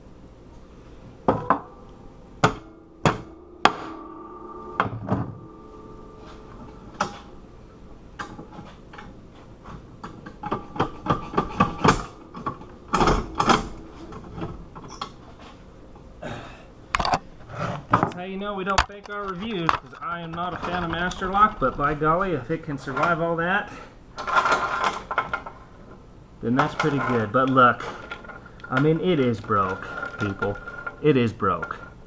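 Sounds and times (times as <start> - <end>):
hammer striking metal padlock: 10.5 - 15.0.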